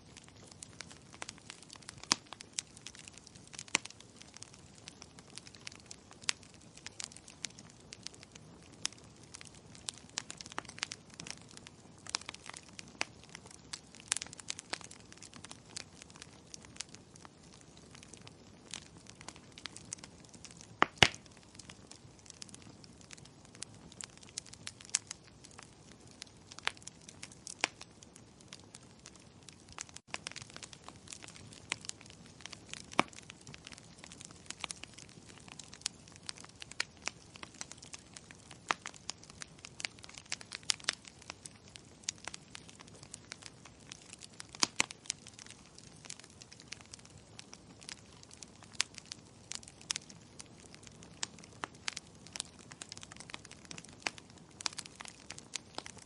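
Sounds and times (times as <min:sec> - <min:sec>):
low rumble of burning: 0:00.0 - 0:56.0
wood fire crackling: 0:00.0 - 0:56.0.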